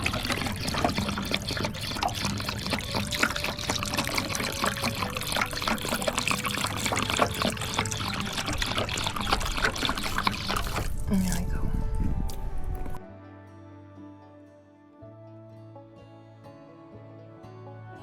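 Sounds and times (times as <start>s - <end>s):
water pouring into bowl: 0.0s - 11.4s.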